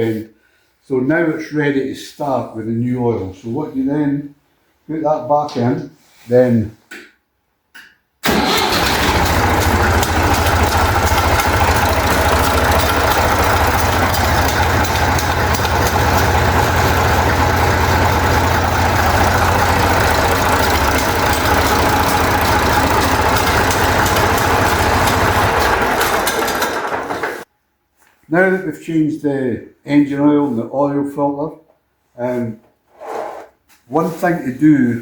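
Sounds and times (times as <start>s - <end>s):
tractor diesel engine running: 8.2s - 27.4s.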